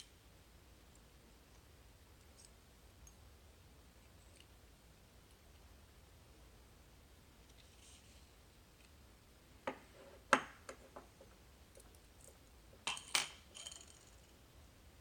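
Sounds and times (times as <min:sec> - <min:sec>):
small metal parts clinking: 0:12.9 - 0:14.3.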